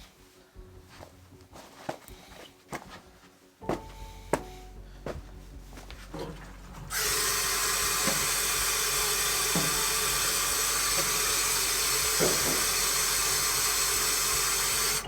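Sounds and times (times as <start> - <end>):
water running from a tap: 6.9 - 15.0.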